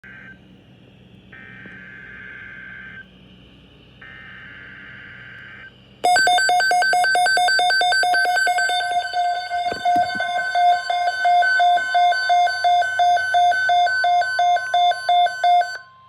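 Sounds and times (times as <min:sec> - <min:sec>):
buzzy digital data tones: 0:06.1 - 0:15.7
rapidly pulsing electronic alert tone: 0:06.1 - 0:15.9.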